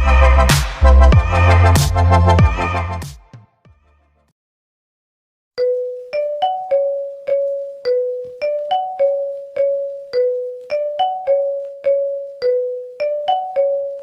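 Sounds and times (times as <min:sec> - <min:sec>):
mallet-like ringtone melody: 0:05.6 - 0:14.0.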